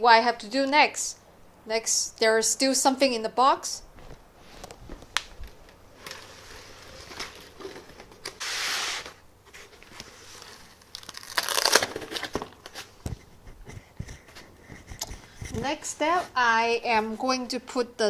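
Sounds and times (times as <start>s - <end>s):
packing material crinkling: 4.6s - 13.0s
packing material tearing: 9.9s - 12.9s.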